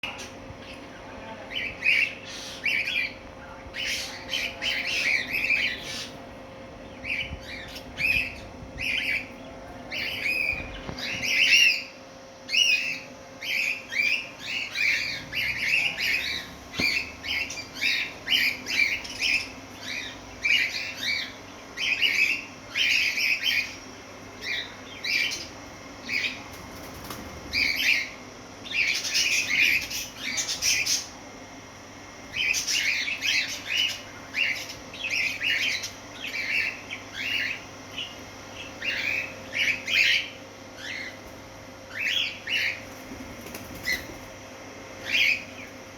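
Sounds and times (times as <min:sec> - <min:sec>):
parrots calling: 0:01.5 - 0:23.8, 0:27.5 - 0:31.2, 0:32.3 - 0:41.2, 0:41.9 - 0:42.9, 0:45.0 - 0:45.7.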